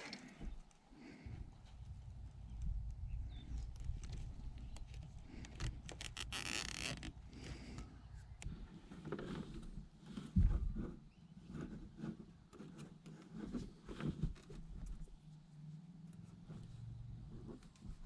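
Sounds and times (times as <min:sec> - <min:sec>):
handling clicks and rustles: 0:02.6 - 0:09.6.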